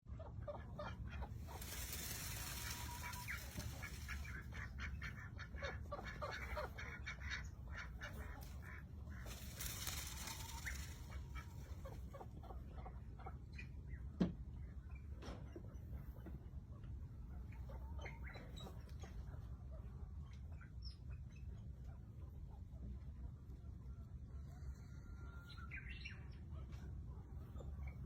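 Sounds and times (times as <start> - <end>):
high hissing noise: 1.5 - 4.4.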